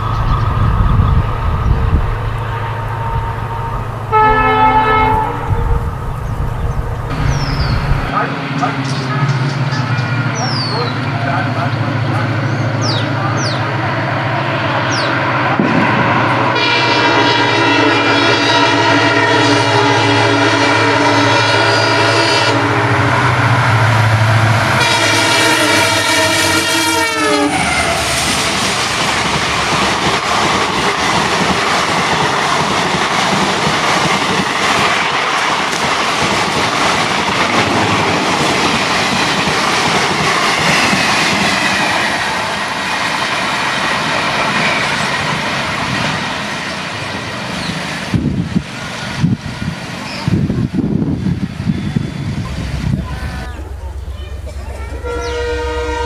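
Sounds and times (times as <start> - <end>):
diesel engine humming: 0.0 - 15.5, 50.7 - 56.0
locomotive multi-note horn: 1.7 - 10.5, 13.5 - 28.4, 51.8 - 56.0
train wheels clattering over rails: 26.1 - 55.4.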